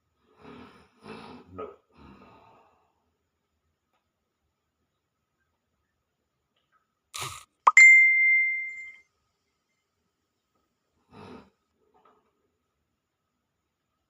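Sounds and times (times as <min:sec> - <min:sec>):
bright ringing ding: 0:07.7 - 0:09.0.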